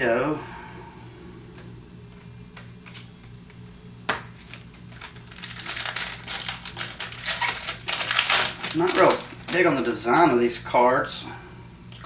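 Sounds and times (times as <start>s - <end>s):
foil wrapper crinkling: 2.8s - 3.3s, 4.1s - 10.5s.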